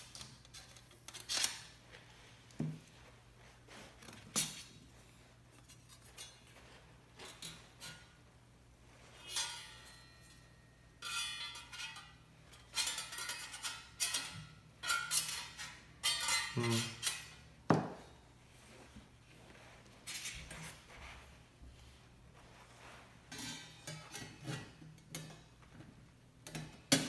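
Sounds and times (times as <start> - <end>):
metal fire pit parts clinking: 7.2 - 8.2, 9.2 - 17.4, 23.3 - 25.6, 26.4 - 27.0.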